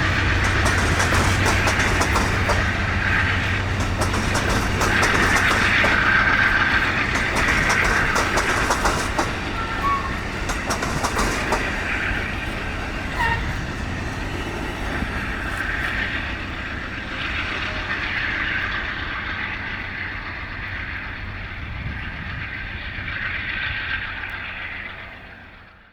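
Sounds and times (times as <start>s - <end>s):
wheels clicking over rail joints: 0.0s - 20.0s
passenger train rolling past: 0.0s - 25.9s.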